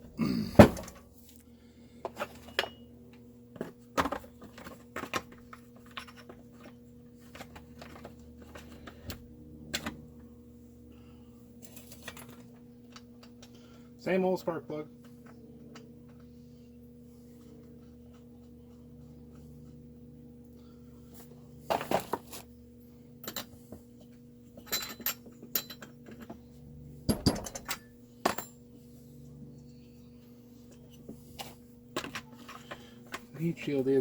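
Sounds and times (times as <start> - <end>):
low electrical hum: 0.0 - 34.0
metal tools clinking: 24.6 - 26.4.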